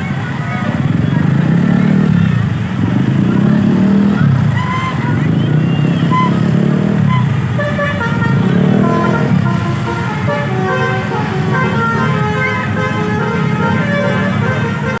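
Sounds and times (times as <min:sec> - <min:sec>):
bus engine rumble: 0:00.0 - 0:15.0
bus horn playing a tune: 0:04.4 - 0:15.0.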